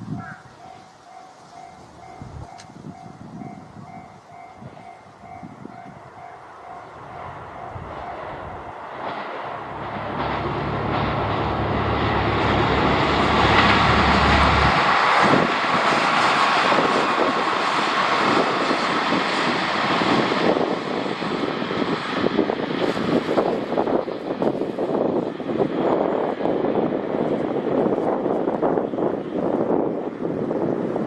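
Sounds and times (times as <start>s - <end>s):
wheels rushing on rails: 0.0s - 31.0s
low engine drone: 9.4s - 15.7s.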